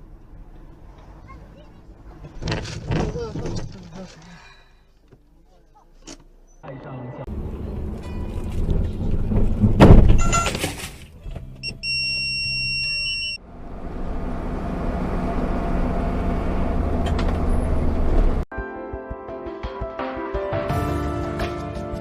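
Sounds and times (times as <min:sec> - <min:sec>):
vehicle running with road noise: 0:00.0 - 0:18.5
loud bang: 0:08.7 - 0:10.2
high electronic beep: 0:11.6 - 0:13.4.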